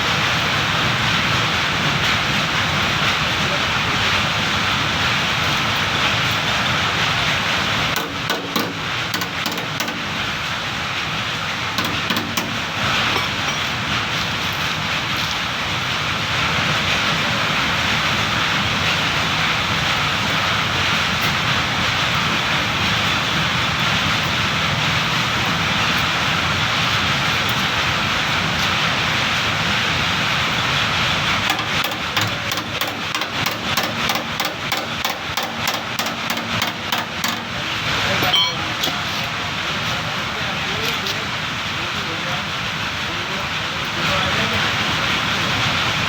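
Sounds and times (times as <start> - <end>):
welding torch flame hissing: 0.0 - 46.0
rapid sharp taps: 31.5 - 37.5.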